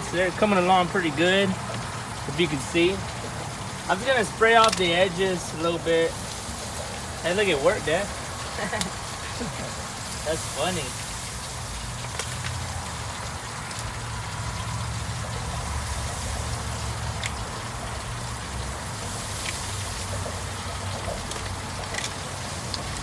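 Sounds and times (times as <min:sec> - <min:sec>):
spray hissing: 0:00.0 - 0:13.8, 0:14.4 - 0:23.0
wood fire crackling pops: 0:00.4 - 0:23.0.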